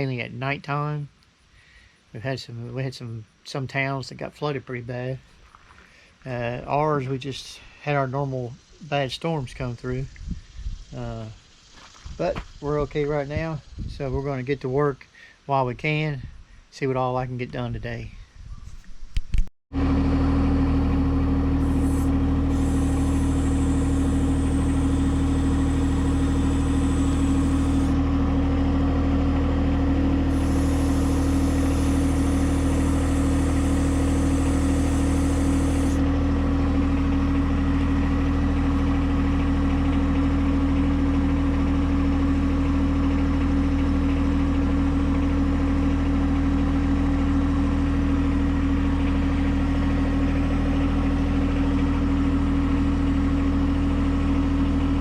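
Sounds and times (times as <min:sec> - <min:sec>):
tractor diesel engine running: 0:19.7 - 0:55.0
high hiss: 0:21.7 - 0:28.0.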